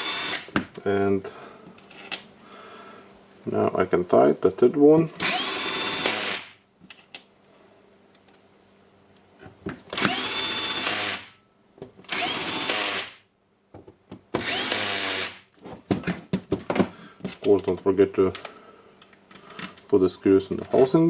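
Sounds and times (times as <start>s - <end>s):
electric drill driving screws: 0.0s - 0.5s, 5.2s - 6.6s, 9.9s - 11.4s, 12.1s - 13.2s, 14.4s - 15.5s.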